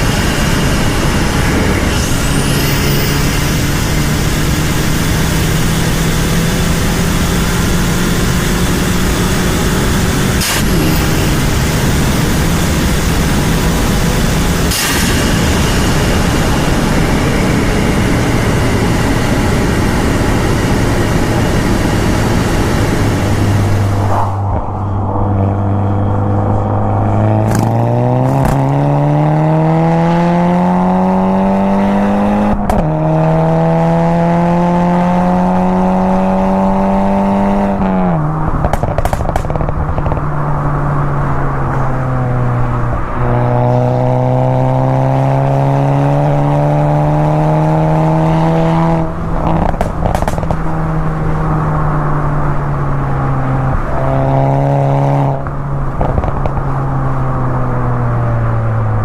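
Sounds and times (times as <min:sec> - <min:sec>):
car engine accelerating: 0:00.0 - 0:59.0
exhaust cracks: 0:08.4 - 0:29.1, 0:37.8 - 0:43.5, 0:49.0 - 0:54.0, 0:55.4 - 0:57.0.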